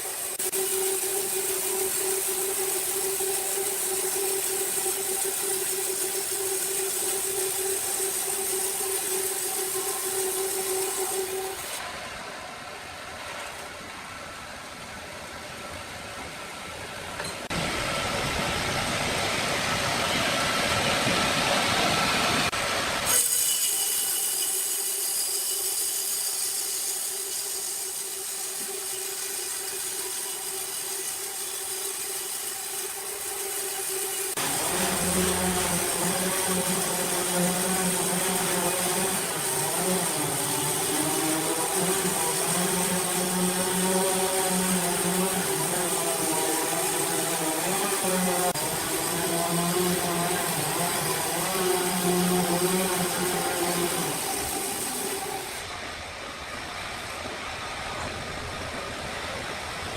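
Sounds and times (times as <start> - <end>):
loud rough sawing: 0.0 - 11.9, 21.9 - 55.8
sawmill machinery whining hum: 0.0 - 59.9.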